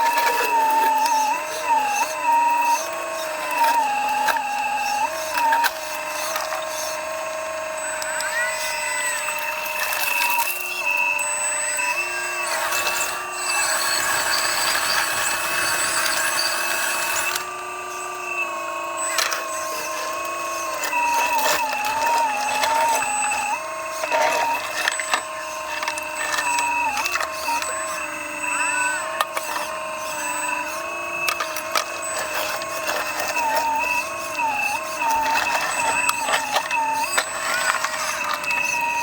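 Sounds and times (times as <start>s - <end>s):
electric motors whining: 0.0s - 39.0s.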